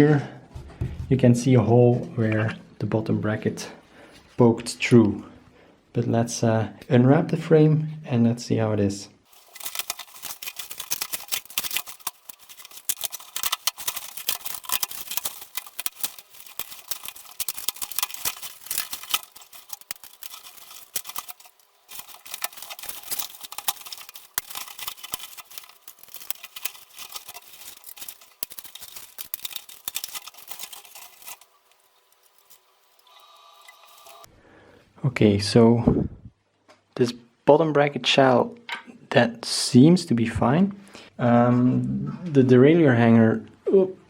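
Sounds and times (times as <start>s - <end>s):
packaging crinkling and rustling: 9.3s - 34.3s.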